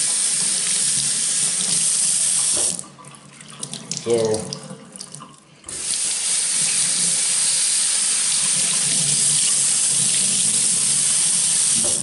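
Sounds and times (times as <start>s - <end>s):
water running from faucet: 0.0s - 12.0s.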